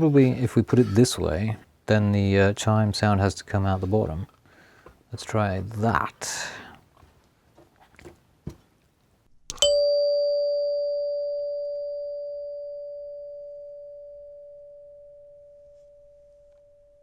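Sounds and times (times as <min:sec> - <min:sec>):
door chime ringing note: 0:09.5 - 0:17.0.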